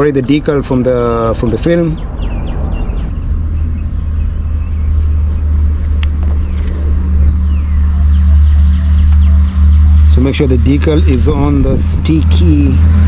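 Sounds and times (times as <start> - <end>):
vehicle engine idling: 0.0 - 13.0.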